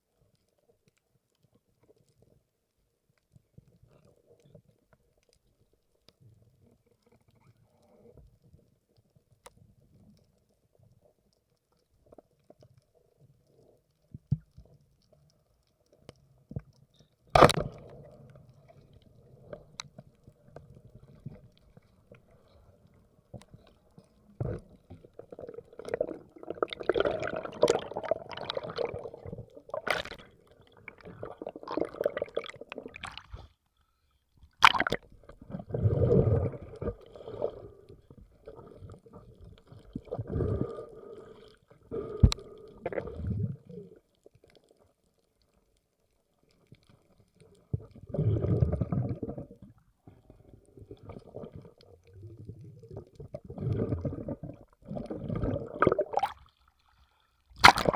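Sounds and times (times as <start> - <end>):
water gurgling and sloshing: 17.4 - 33.7, 34.4 - 45.0, 46.4 - 57.9.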